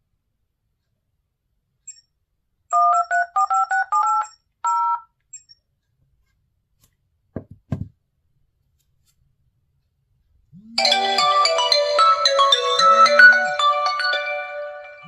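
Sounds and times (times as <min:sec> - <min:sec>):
smartphone ringtone: 0:02.7 - 0:05.0, 0:10.7 - 0:15.0.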